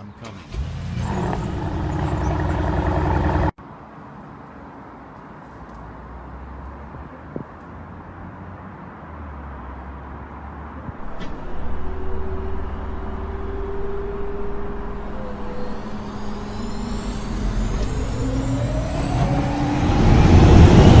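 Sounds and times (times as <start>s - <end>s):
car engine revving: 0.3s - 3.6s, 11.0s - 21.0s.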